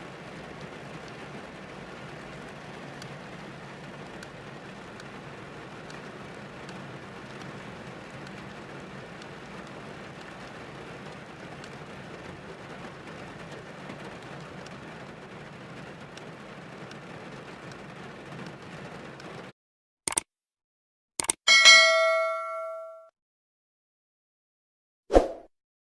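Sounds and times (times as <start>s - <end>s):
rain on car roof: 0.0s - 19.5s.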